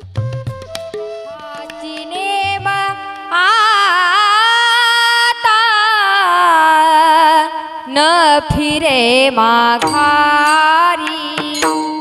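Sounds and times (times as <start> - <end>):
drum strokes: 0.0 - 3.5, 9.8 - 12.0
woman singing with vibrato: 1.2 - 12.0.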